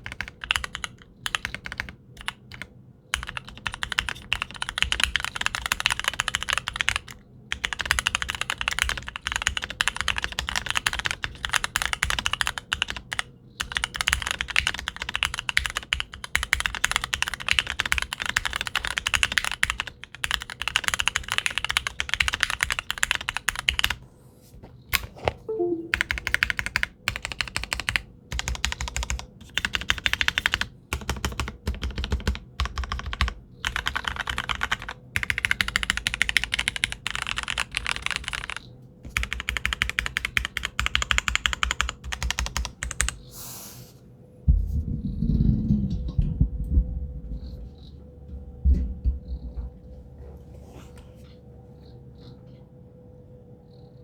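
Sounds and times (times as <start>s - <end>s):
mechanical keyboard typing: 0.0s - 24.0s, 25.0s - 43.3s.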